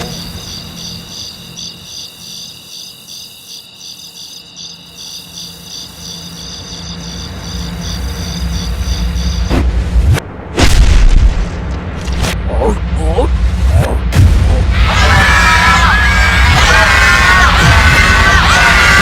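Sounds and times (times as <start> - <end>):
crickets chirping: 0.0 - 9.5
low rumble: 7.4 - 19.0.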